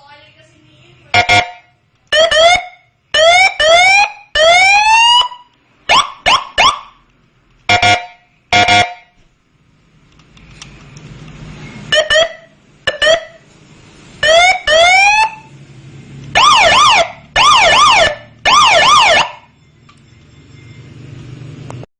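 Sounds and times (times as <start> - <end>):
police electronic siren bursts: 1.2 - 7.1, 11.8 - 13.4, 14.2 - 15.5, 16.3 - 21.1.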